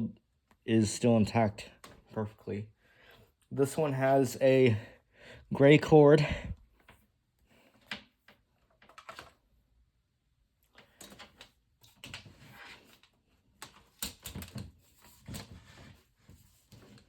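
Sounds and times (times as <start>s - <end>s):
plastic fan being handled: 7.7s - 9.4s, 10.7s - 17.0s.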